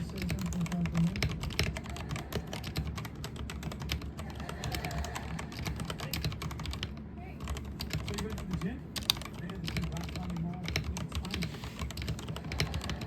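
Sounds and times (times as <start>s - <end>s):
keyboard typing: 0.0s - 13.0s.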